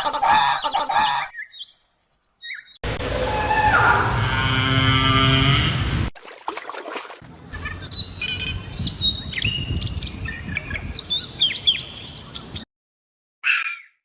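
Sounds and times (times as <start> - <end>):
bird chirping: 0.3 - 2.8, 7.5 - 12.7.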